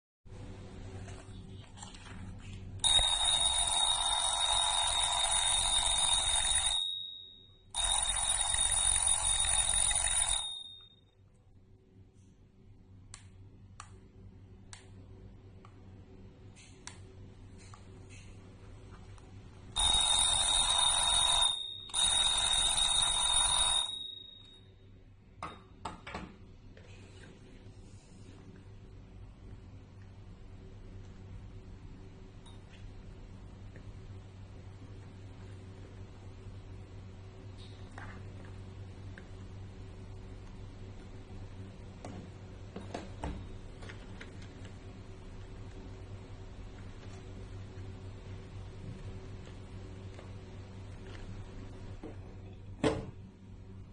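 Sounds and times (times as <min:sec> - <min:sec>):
alarm clock bell ringing: 0:02.8 - 0:11.1, 0:19.8 - 0:24.8.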